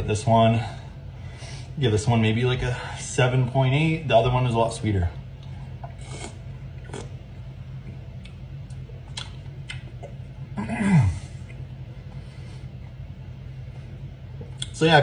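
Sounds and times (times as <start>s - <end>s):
steady low hum: 0.0s - 15.0s
mouth clicks and smacks: 7.9s - 10.3s, 14.4s - 14.8s.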